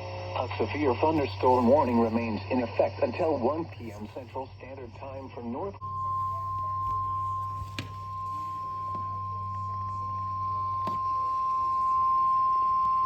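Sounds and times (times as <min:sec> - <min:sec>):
low radio hum: 0:00.0 - 0:13.0
high single alarm tone: 0:05.8 - 0:13.0.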